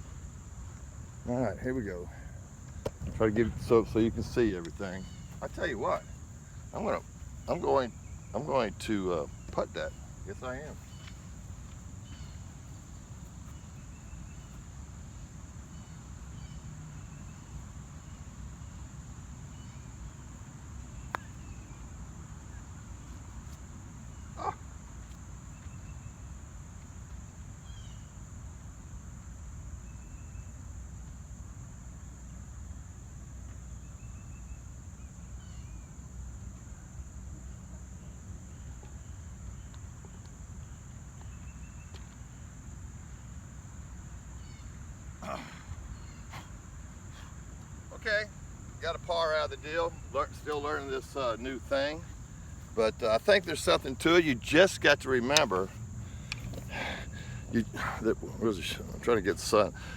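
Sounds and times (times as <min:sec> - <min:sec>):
insects droning: 0:00.0 - 0:59.9.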